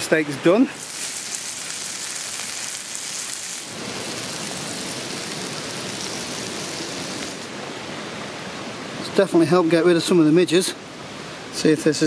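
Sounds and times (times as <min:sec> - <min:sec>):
waterfall rushing: 0:00.7 - 0:09.0
steak sizzling in a frying pan: 0:00.8 - 0:07.5.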